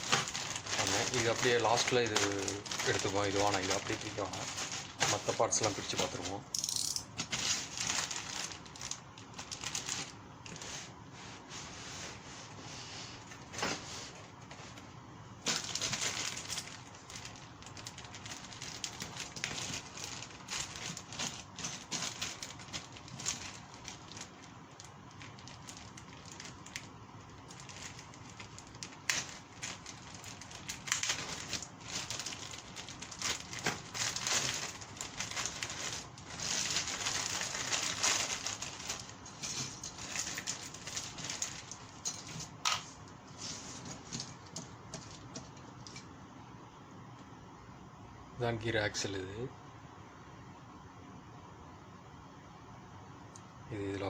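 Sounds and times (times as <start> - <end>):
plastic bags crinkling: 0.0 - 10.7, 15.4 - 46.0.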